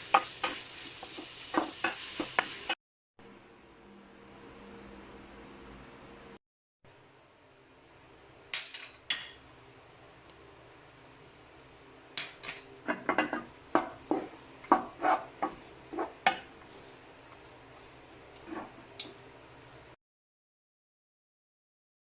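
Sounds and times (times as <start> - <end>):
utensils clinking against dishes: 12.2 - 13.9.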